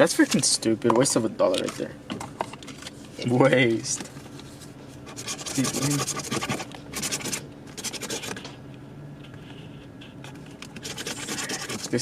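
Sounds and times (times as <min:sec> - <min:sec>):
coin scratching lottery ticket: 0:05.1 - 0:08.4, 0:10.8 - 0:12.0.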